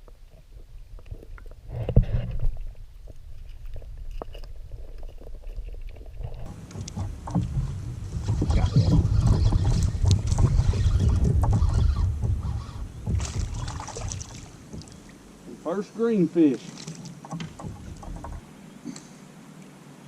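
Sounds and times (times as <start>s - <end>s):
water splashing around kayak: 0.0s - 19.8s.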